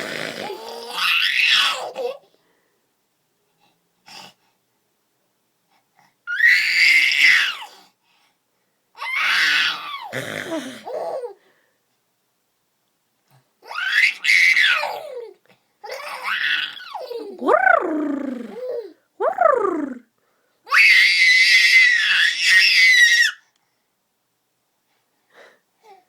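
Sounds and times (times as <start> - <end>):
person making high-pitched silly noises: 17.2 - 20.1.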